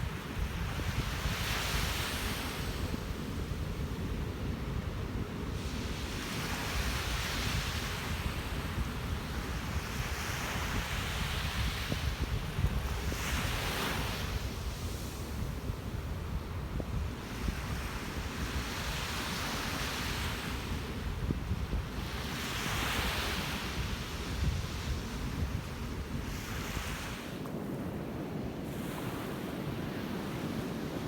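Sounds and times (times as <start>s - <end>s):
wind buffeting microphone: 2.8s - 19.4s.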